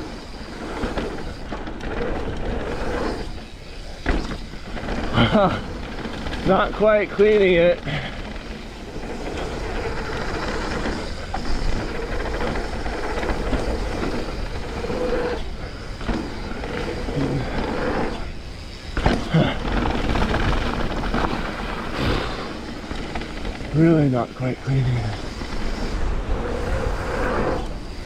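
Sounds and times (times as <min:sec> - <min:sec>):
bike rattling: 0:00.0 - 0:28.0
bike tyres rushing on dirt: 0:00.0 - 0:28.0
bike knocking over bumps: 0:18.8 - 0:23.7.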